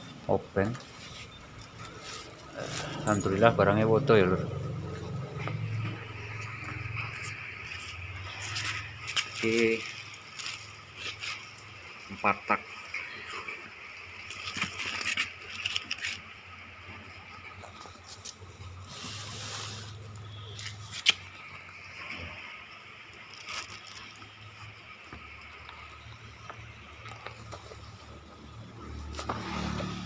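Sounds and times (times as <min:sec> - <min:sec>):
packaging rustling and scraping: 0:00.6 - 0:03.5, 0:05.0 - 0:11.8, 0:14.2 - 0:21.7, 0:23.1 - 0:30.0
hiss of sliding material: 0:18.8 - 0:20.2.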